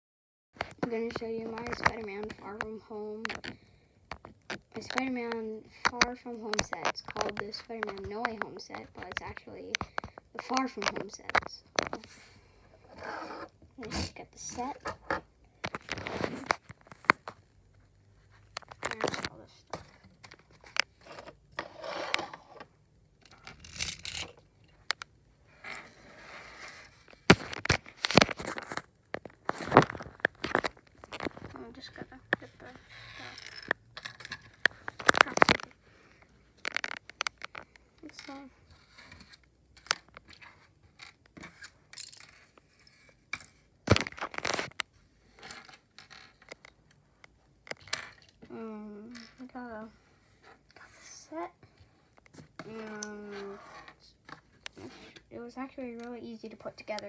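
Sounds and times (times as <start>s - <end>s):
plastic parts clicking: 23.2s - 25.1s, 36.6s - 38.4s.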